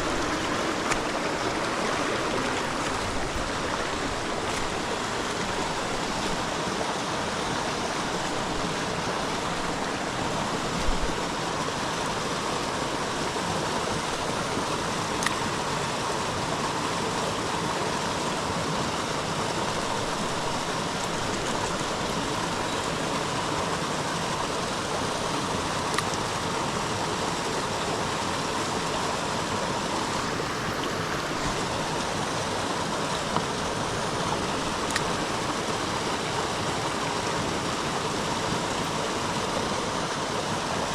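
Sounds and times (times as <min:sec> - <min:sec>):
creek water rushing: 0:00.0 - 0:40.9
faint clicks: 0:34.8 - 0:35.2.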